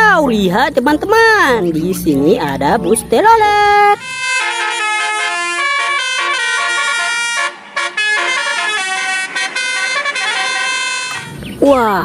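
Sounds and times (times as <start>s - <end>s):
bus musical horn: 3.8s - 11.4s.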